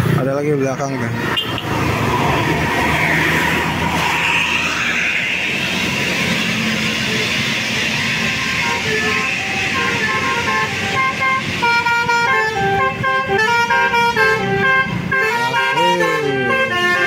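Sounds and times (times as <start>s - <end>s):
bus passing: 0.0s - 17.0s
multi-trumpet air horn tune: 8.6s - 17.0s.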